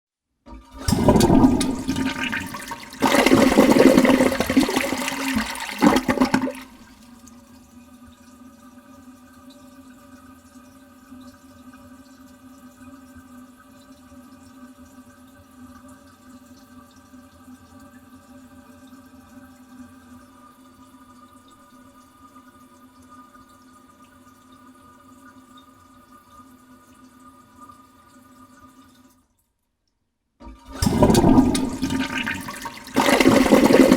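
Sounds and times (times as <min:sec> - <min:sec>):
toilet flushing: 0:00.5 - 0:08.9, 0:30.4 - 0:33.9
toilet tank refilling hum: 0:00.5 - 0:29.3, 0:30.4 - 0:33.9.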